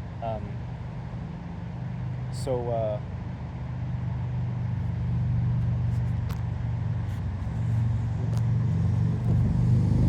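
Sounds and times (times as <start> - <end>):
low droning hum: 4.2 - 10.0.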